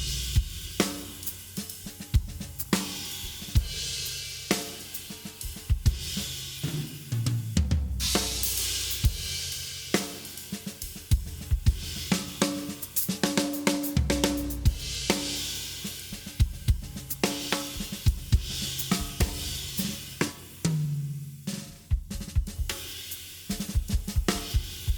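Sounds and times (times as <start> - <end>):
hi-hat: 0.0 - 7.4, 8.1 - 20.8, 21.7 - 24.9
crashing cymbals: 8.0 - 10.9, 14.4 - 16.3.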